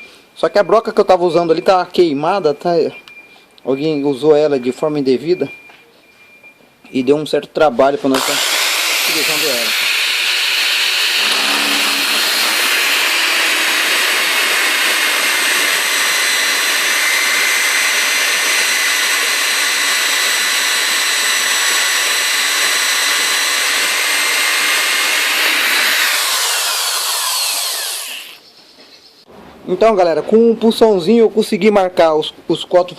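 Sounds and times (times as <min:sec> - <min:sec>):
electric drill whining into metal: 0:08.1 - 0:28.4.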